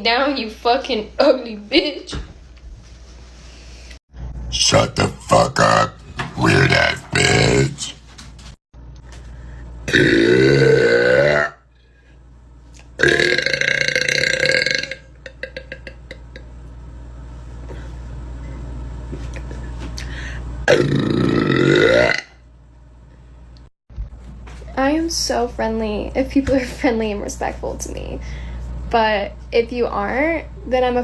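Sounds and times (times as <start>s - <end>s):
woman burping loudly: 9.9s - 11.6s, 13.0s - 16.4s, 20.7s - 22.4s.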